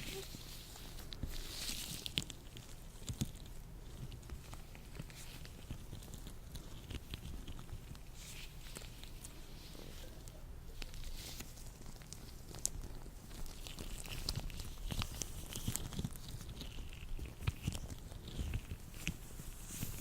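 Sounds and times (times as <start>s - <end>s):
latex gloves rubbing and stretching: 0.0s - 2.8s, 10.9s - 20.0s.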